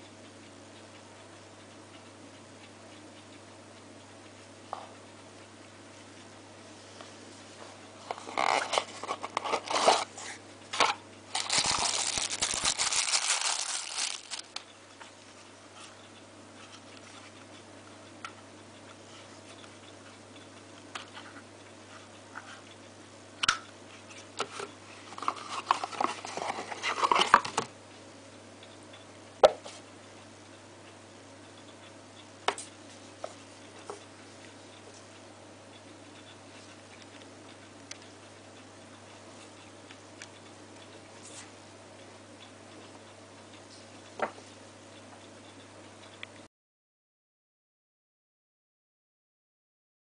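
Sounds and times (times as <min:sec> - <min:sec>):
low steady hum: 0:00.0 - 0:46.5
rustling and crinkling handling noise: 0:07.1 - 0:14.6, 0:23.9 - 0:27.7.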